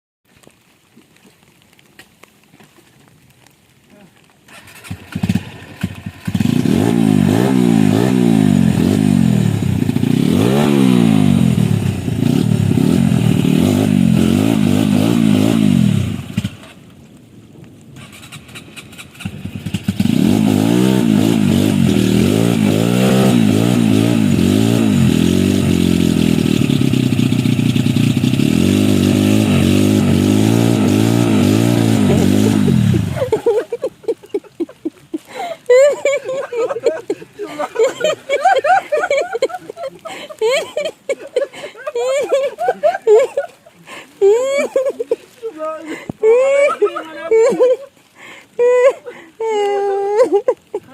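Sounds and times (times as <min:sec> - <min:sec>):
motorcycle engine revving: 0:04.5 - 0:16.8, 0:18.0 - 0:33.6.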